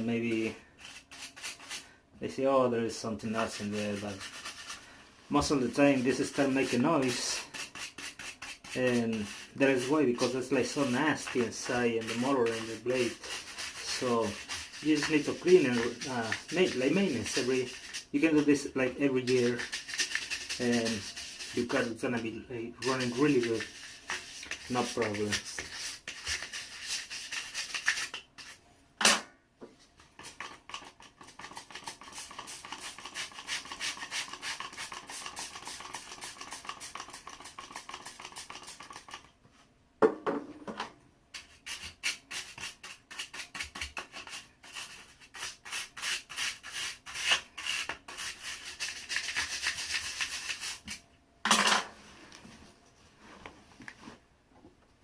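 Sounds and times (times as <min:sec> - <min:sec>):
brush scrubbing fan blades: 0:02.9 - 0:28.6, 0:30.0 - 0:39.3.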